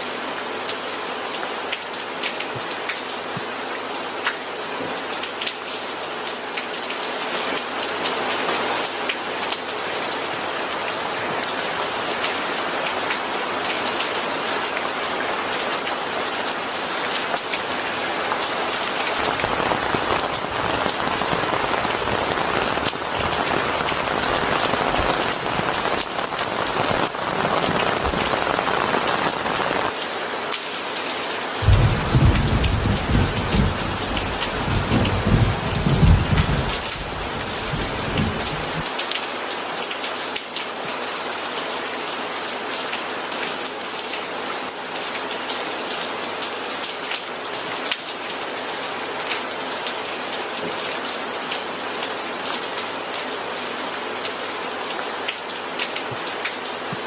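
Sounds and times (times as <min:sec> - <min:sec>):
heavy rain: 0:00.0 - 0:57.0
thunder rumble: 0:19.2 - 0:29.8, 0:31.6 - 0:38.8.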